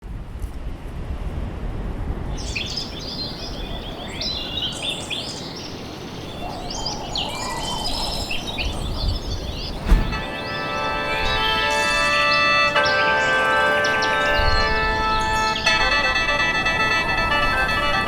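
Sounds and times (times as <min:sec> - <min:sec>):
wind rumble: 0:00.0 - 0:18.0
birds chirping and trilling: 0:02.3 - 0:16.2
thump: 0:09.8 - 0:10.3
music with bell-like tones: 0:10.3 - 0:18.0.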